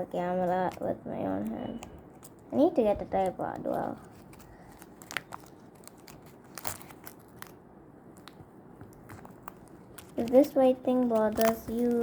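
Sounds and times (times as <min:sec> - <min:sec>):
paper squishy crinkling and clicking: 0:00.0 - 0:12.0.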